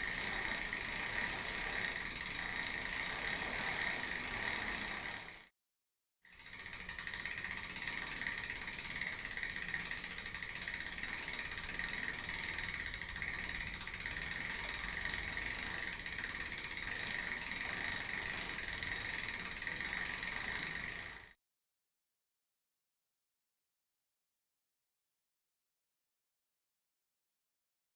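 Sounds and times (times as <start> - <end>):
bicycle chain whirring: 0.0 - 5.5, 6.3 - 21.4.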